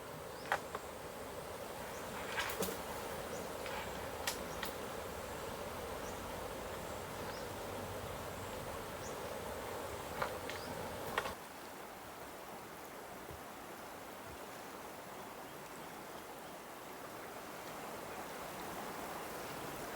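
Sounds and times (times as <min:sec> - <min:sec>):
insects buzzing: 0:00.0 - 0:11.4.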